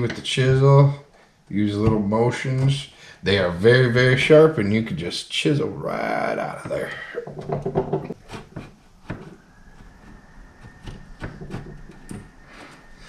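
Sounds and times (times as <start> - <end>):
chisel scraping wood: 7.2 - 12.9.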